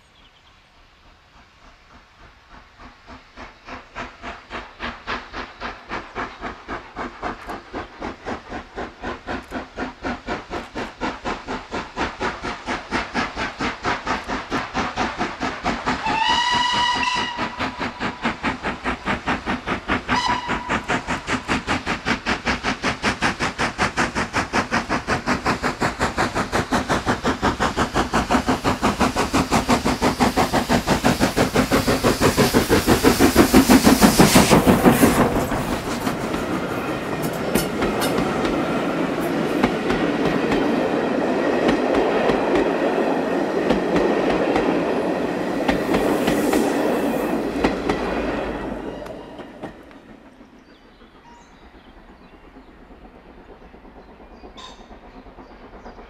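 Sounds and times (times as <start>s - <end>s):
steam locomotive exhaust beats: 0.1s - 56.0s
steam whistle: 16.0s - 17.8s, 20.1s - 20.9s.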